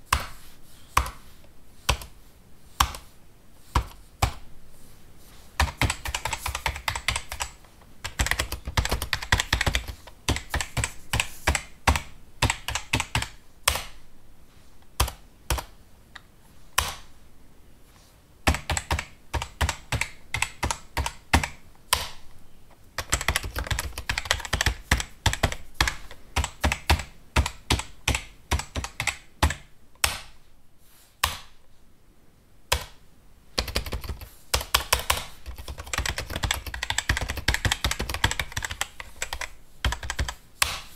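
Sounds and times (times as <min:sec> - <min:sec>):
keyboard typing clicks: 0:05.6 - 0:14.0, 0:23.0 - 0:30.4, 0:33.6 - 0:40.9.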